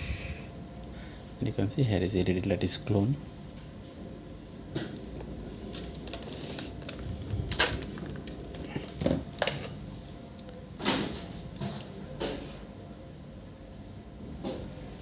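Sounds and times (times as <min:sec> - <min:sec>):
faint steady background noise: 0:00.0 - 0:15.0.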